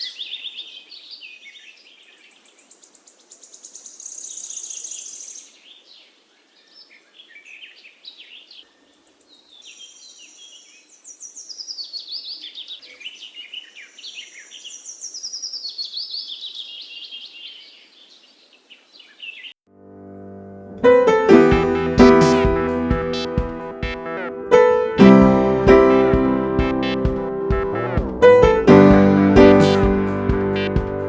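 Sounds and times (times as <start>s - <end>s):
songbirds chirping and trilling: 0.0s - 19.6s.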